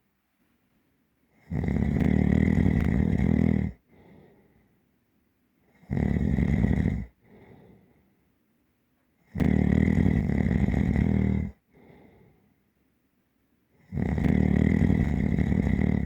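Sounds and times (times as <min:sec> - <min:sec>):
deep heavy snoring: 0:01.4 - 0:04.2, 0:05.8 - 0:07.8, 0:09.3 - 0:12.0, 0:13.8 - 0:16.0
soft breath: 0:03.7 - 0:04.9, 0:07.0 - 0:08.4, 0:11.5 - 0:12.8.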